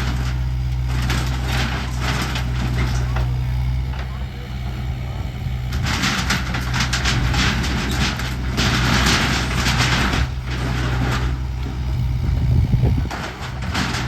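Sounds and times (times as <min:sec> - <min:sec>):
bucket crunching and dragging debris: 0:00.0 - 0:03.4, 0:05.7 - 0:11.8
breaking and scraping material: 0:00.0 - 0:04.1, 0:05.7 - 0:11.8, 0:13.0 - 0:14.0
excavator diesel engine running: 0:00.0 - 0:14.0.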